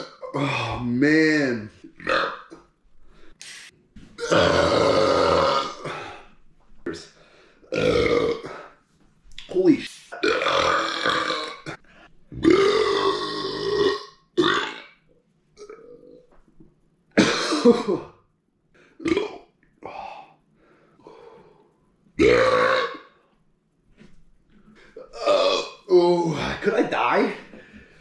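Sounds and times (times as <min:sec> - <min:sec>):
person belching: 0:00.0 - 0:00.8, 0:02.0 - 0:02.6, 0:04.2 - 0:06.2, 0:07.7 - 0:08.7, 0:10.2 - 0:14.9, 0:19.0 - 0:19.4, 0:22.2 - 0:23.1, 0:25.0 - 0:26.0.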